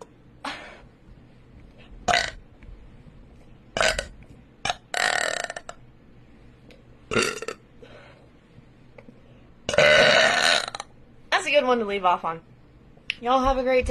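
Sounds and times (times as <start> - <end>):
woman burping loudly: 2.1 - 2.4, 3.8 - 4.1, 4.7 - 5.8, 7.1 - 7.6, 9.7 - 10.9.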